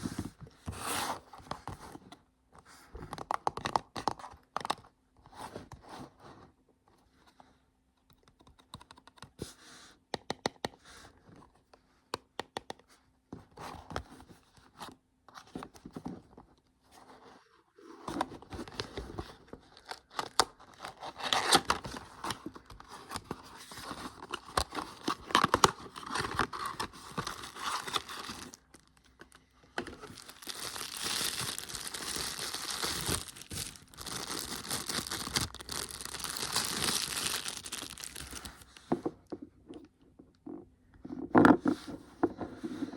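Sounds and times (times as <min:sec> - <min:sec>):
packaging crinkling and tearing: 0:19.8 - 0:38.9.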